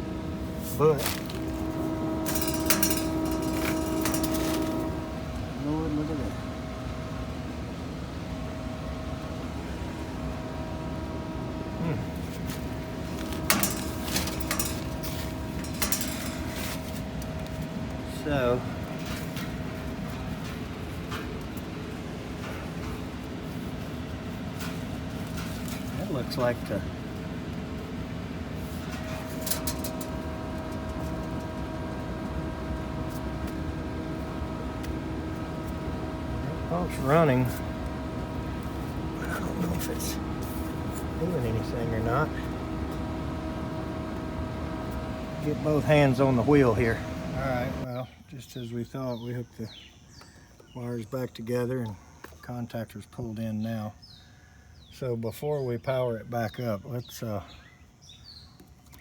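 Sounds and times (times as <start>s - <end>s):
machine hum: 0.0s - 47.9s.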